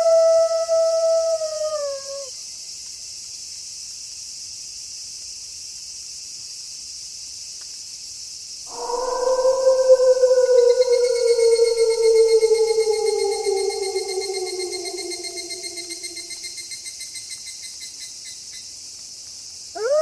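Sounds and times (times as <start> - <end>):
wolf howling: 0.0 - 2.3, 8.7 - 16.6, 19.8 - 20.0
high hiss of night ambience: 0.0 - 20.0.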